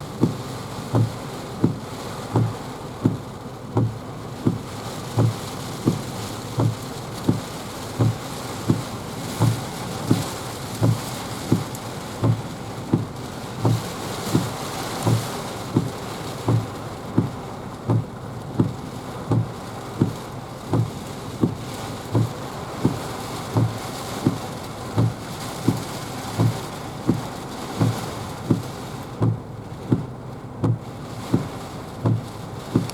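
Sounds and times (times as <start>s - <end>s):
rough sea rushing: 4.4s - 29.4s.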